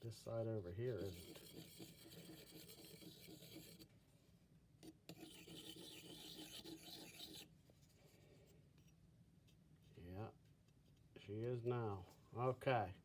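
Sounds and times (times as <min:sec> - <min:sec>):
blade scraping on sharpening stone: 0:01.0 - 0:03.8, 0:05.1 - 0:07.5.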